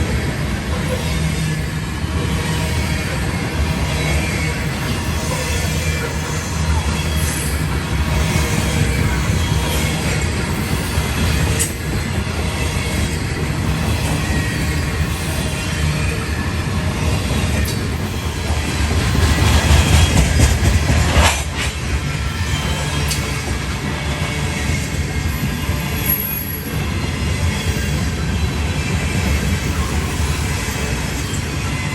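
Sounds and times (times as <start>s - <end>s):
train wheels rumbling on rails: 0.0s - 31.9s
sharp rail clacks: 17.6s - 22.1s.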